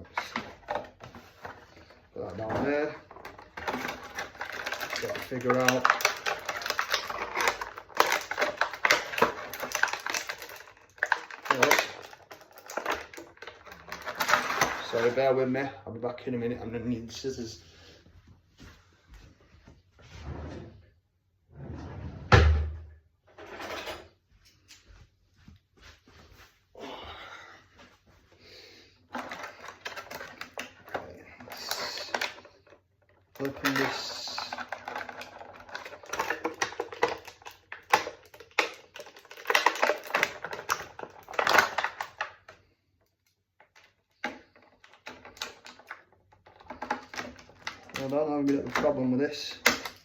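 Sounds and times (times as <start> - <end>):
packaging crinkling and clicking: 0.0 - 15.3, 29.1 - 50.0
rummaging: 0.0 - 15.6, 29.0 - 42.8, 43.6 - 50.0
drawer sliding and banging shut: 21.5 - 23.9.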